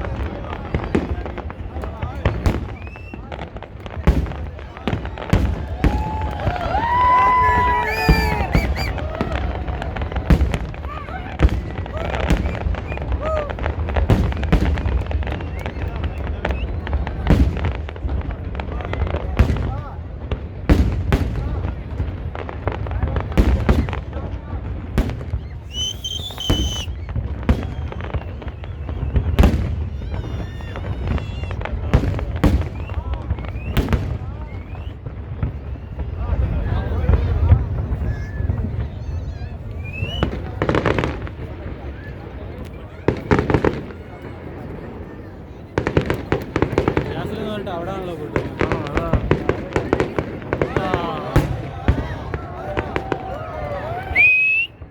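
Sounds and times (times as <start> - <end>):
fireworks bangs: 0.0 - 54.9
high firework whistle: 2.3 - 3.5, 5.2 - 13.6, 15.2 - 17.2, 25.2 - 36.3, 39.7 - 41.2, 53.0 - 54.9.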